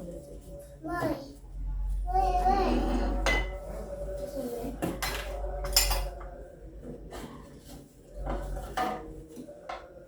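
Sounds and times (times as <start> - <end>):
cutlery and plates clinking: 4.8 - 6.4, 7.0 - 10.0.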